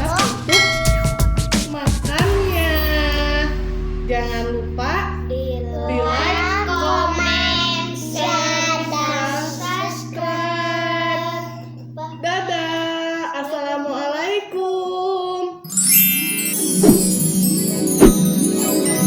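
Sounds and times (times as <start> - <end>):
low keyboard backing music: 0.0 - 13.6
child singing: 5.3 - 14.0.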